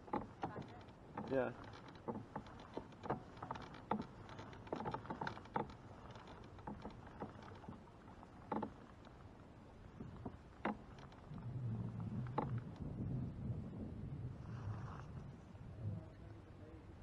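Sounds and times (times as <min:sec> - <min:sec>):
knocks and clicks on kayak: 0:00.0 - 0:09.2, 0:09.9 - 0:13.0
faint water: 0:00.0 - 0:17.0.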